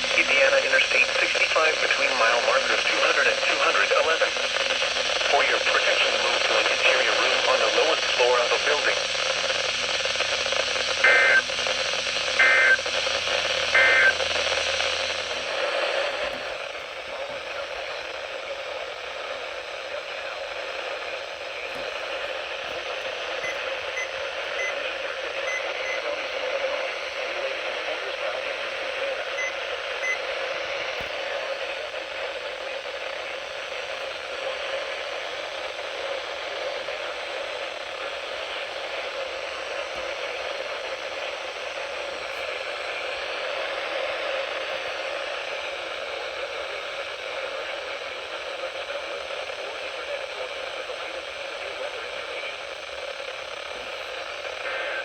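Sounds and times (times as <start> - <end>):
radio static hiss: 0.0 - 55.0.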